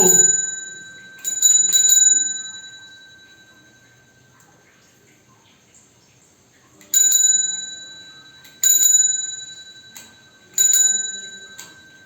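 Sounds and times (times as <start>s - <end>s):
bicycle bell ringing: 0.0s - 4.4s, 6.9s - 12.0s.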